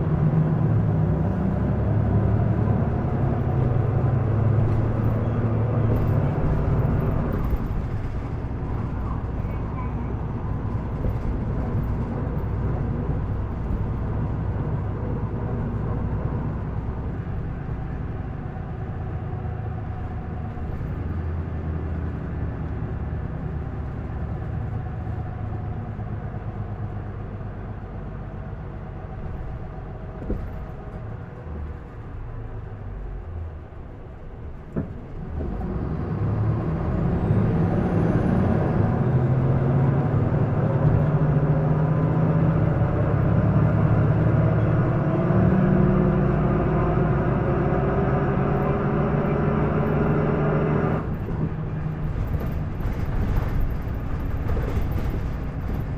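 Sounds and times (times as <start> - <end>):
bus diesel engine: 0.0 - 55.9.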